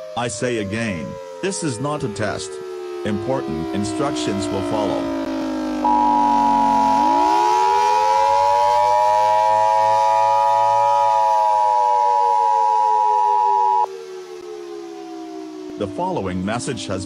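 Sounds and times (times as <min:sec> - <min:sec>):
civil defense siren wailing: 0:00.0 - 0:17.0
steady high beep: 0:05.8 - 0:07.4, 0:09.8 - 0:13.9.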